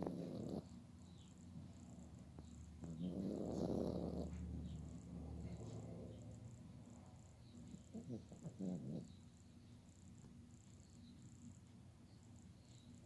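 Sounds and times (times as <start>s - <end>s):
dog snoring: 0.0s - 0.8s, 1.8s - 6.4s, 7.6s - 9.4s.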